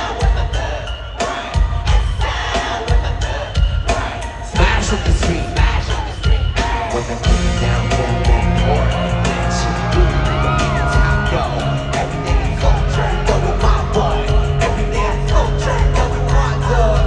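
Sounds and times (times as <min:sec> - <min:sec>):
drums and bass: 0:00.0 - 0:17.0
person singing: 0:00.0 - 0:17.0
audience yells and whoops: 0:06.6 - 0:17.0.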